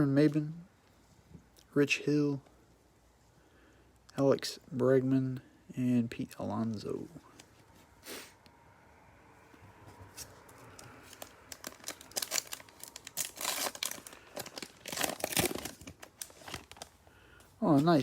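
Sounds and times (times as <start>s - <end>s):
wrapper being torn and crinkled: 10.7s - 17.0s.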